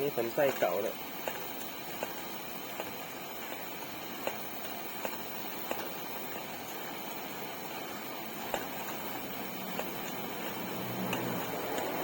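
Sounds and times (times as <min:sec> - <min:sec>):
pressure lantern burner hissing: 0:00.0 - 0:12.0.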